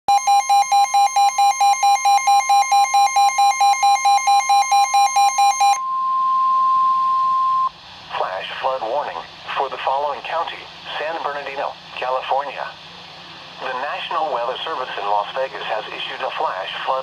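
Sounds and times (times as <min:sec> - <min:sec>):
steady high warning tone: 0:00.1 - 0:08.5.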